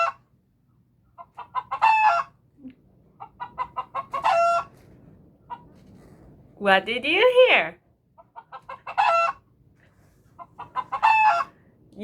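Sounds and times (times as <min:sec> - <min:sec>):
hen cackling: 0:00.0 - 0:00.2, 0:01.2 - 0:02.5, 0:03.2 - 0:04.8, 0:08.2 - 0:09.5, 0:10.4 - 0:11.6.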